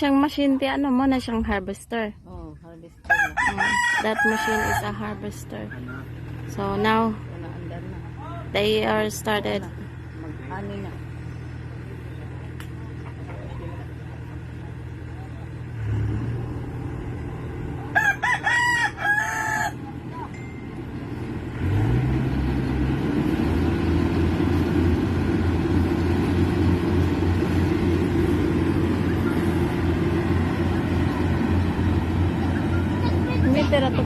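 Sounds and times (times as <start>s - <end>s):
harvester engine running: 0.0s - 34.0s
rooster crowing: 3.0s - 5.1s, 17.9s - 19.9s.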